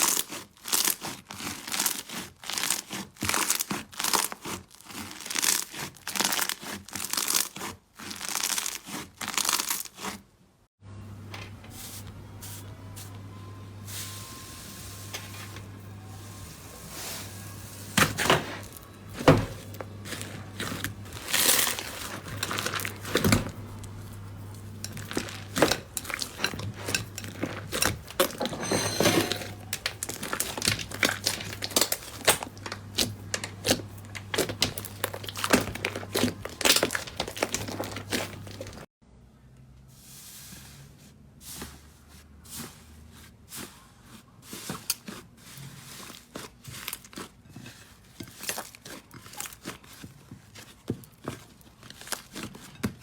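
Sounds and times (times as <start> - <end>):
slime crackling and popping: 0.0 - 10.1, 29.8 - 38.8.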